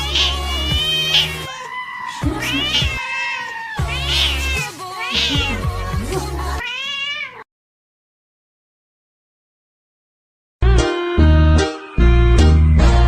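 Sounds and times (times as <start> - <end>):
cat meowing: 0.0 - 5.8, 6.6 - 7.5.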